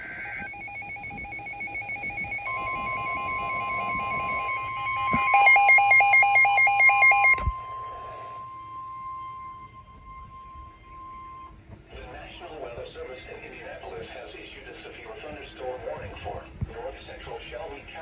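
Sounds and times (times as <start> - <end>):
rapid two-pitch electronic beeping: 0.0 - 11.6
steady warning alarm tone: 0.0 - 13.8.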